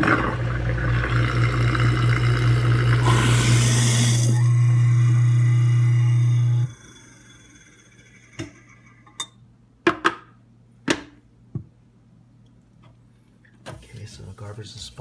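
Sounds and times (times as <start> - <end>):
garbage disposal motor hum: 0.0 - 9.4.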